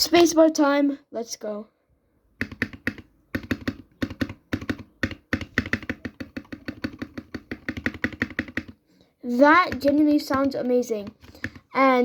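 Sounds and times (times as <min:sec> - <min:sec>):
keyboard spacebar clacking: 0:02.4 - 0:08.8, 0:09.6 - 0:11.7.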